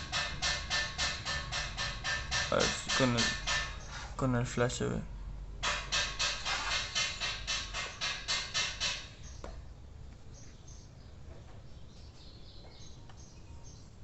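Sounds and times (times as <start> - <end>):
rhythmic scratching strokes: 0.0 - 4.2, 5.6 - 9.0.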